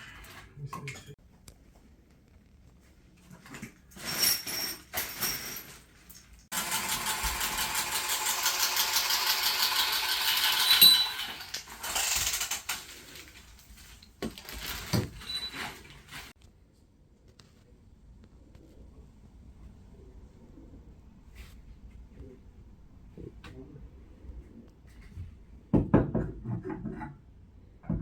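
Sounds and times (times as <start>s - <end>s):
metal tools clinking: 4.0s - 5.9s, 10.3s - 12.9s
sharp metallic clink: 10.6s - 11.3s.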